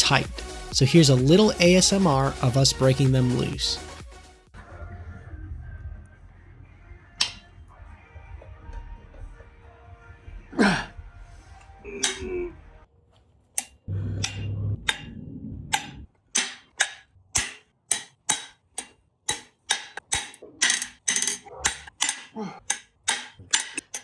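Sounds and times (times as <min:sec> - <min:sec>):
bolt creaking and cracking loose: 0:15.8 - 0:24.0
ratchet wrench clicking: 0:15.8 - 0:24.0.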